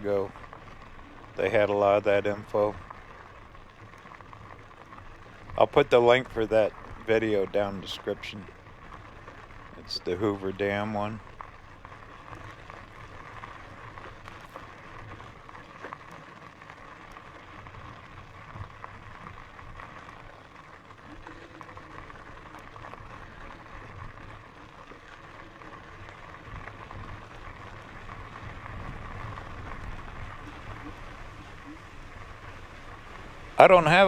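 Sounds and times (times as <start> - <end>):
bicycle tyres crunching on gravel: 0.0 - 34.0
faint steady whine: 0.0 - 34.0
small clicks of stones: 11.2 - 33.3.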